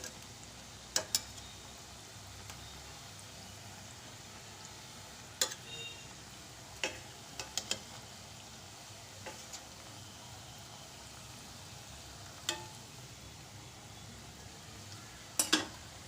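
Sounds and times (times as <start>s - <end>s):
oil sizzling in a pan: 0.0s - 16.0s
utensil clicking against pan: 0.9s - 1.4s, 5.4s - 5.7s, 6.8s - 7.9s, 15.4s - 15.8s.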